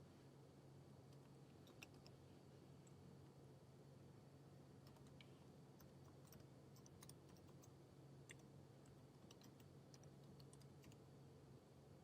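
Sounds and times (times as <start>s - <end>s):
low steady hum: 0.0s - 12.0s
keyboard typing clicks: 5.8s - 7.7s, 9.2s - 11.0s.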